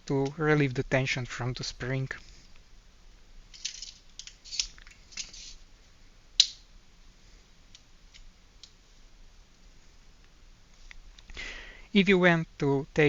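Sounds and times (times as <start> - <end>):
scraping and rustling of handling: 1.4 - 6.1.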